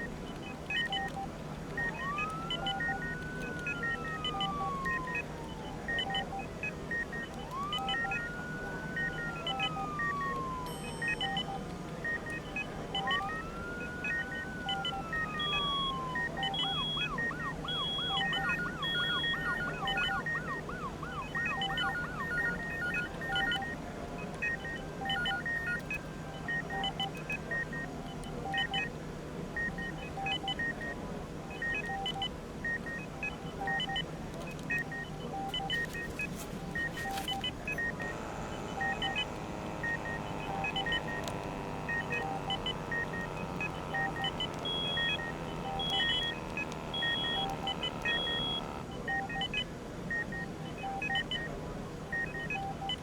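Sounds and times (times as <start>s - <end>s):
medical equipment beeping: 0.0s - 28.9s, 31.5s - 53.0s
higher-pitched device beeps: 5.9s - 23.8s, 24.4s - 27.8s, 34.7s - 51.5s.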